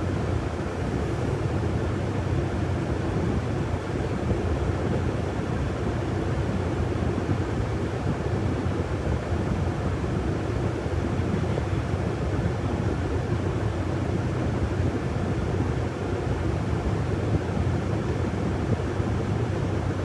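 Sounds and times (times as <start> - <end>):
bus engine and road rumble: 0.0 - 3.4.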